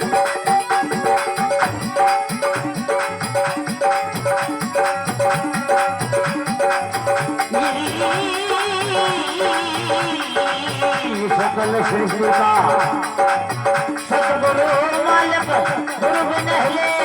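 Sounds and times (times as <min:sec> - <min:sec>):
jingling percussion: 0:00.0 - 0:17.0
sustained voice with vibrato: 0:07.6 - 0:13.1.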